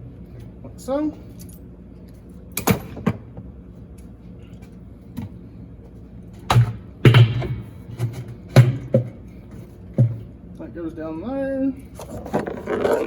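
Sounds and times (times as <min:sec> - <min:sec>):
heavy clunks: 0:06.5 - 0:09.2.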